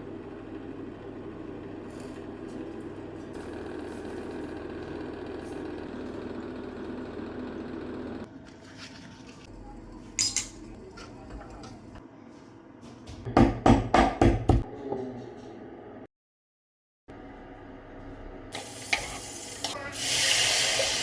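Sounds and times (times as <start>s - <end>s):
kitchenware clink: 10.0s - 11.8s
kitchenware knocking on hard surface: 13.2s - 14.7s.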